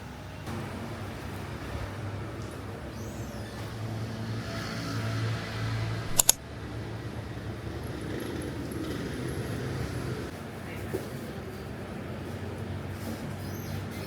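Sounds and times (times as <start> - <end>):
sharp double click: 6.1 - 6.4.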